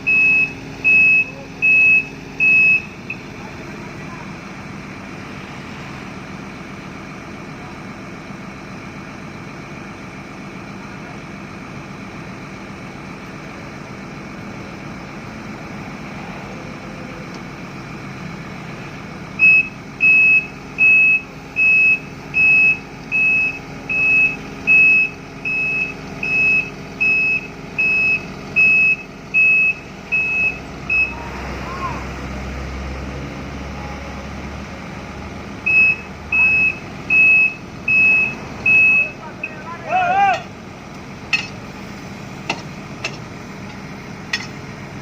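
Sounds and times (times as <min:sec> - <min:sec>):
reversing alarm beeping: 0:00.0 - 0:03.3, 0:19.4 - 0:31.2, 0:35.6 - 0:39.7
diesel engine running: 0:00.0 - 0:45.0.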